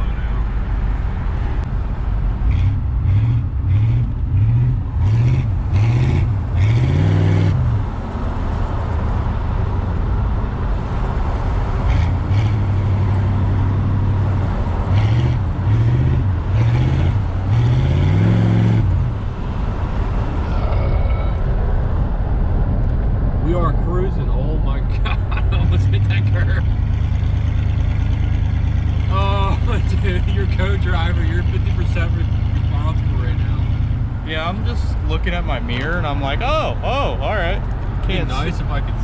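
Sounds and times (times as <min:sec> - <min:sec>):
car engine surging: 0:10.4 - 0:39.0.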